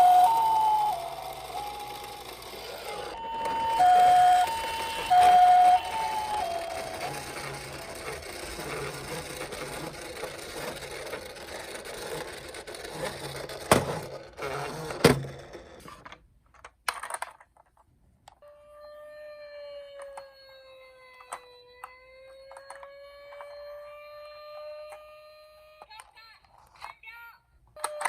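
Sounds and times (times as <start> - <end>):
electronic tone: 0.0 - 8.8
toy car whirring rattle: 0.0 - 16.1, 19.5 - 25.2.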